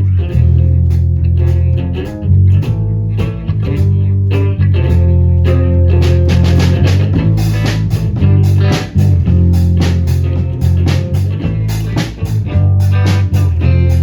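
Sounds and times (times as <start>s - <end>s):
bass guitar: 0.0s - 14.0s
electric guitar: 0.0s - 14.0s
drum kit beat: 4.9s - 14.0s.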